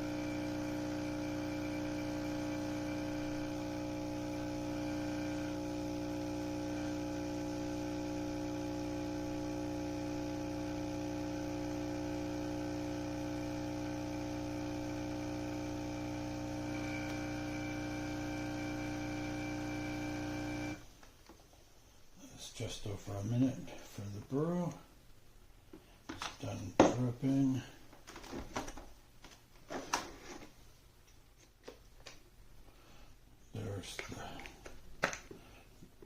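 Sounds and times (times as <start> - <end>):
coffee maker pump humming: 0.0 - 20.8.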